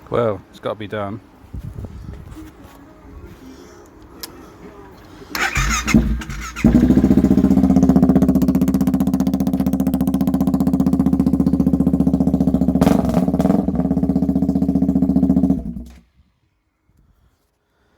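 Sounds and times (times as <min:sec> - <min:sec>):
motorcycle engine cranking: 0:05.3 - 0:16.0
motorcycle engine idling: 0:05.3 - 0:16.0.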